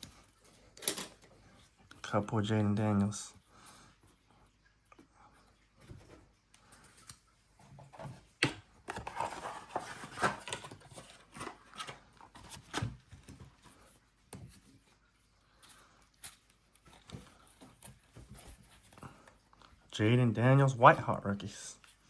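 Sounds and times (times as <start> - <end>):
foil wrappers rustling: 8.8 - 13.6.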